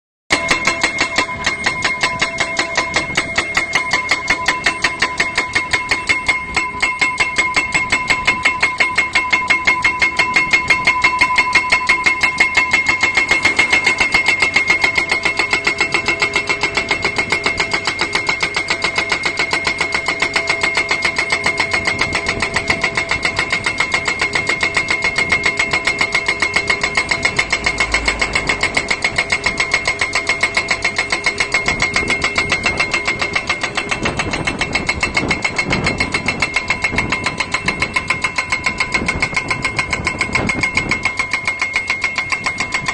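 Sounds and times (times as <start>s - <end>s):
metallic ringing tone: 0.3s - 42.9s
pile driver hammering steel post: 0.3s - 42.9s
pile driver engine running: 11.5s - 41.1s.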